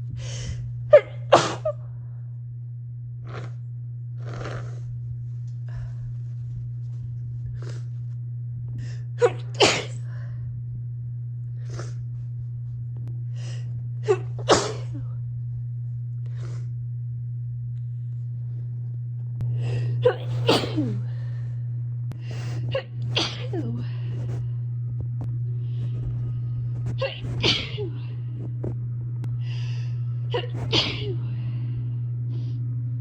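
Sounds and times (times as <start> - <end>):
steady low hum: 0.0 - 33.0
person sneezing: 1.0 - 1.8, 9.2 - 10.0, 14.1 - 15.0, 20.0 - 21.1, 22.5 - 24.4, 27.0 - 28.0, 30.3 - 31.2.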